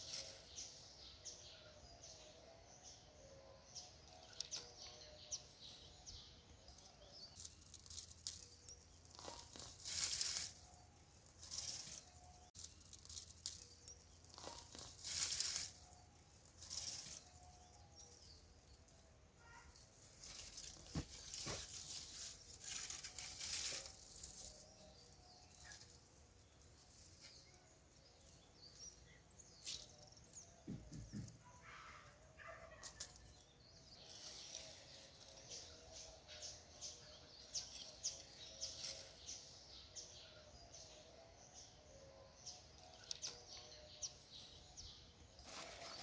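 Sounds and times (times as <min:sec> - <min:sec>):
dry plants and soil rustling: 0:00.0 - 0:46.0.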